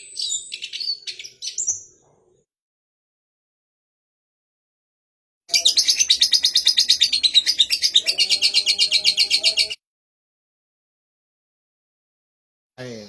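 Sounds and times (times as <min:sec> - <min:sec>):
songbird singing high notes: 0:05.5 - 0:09.8.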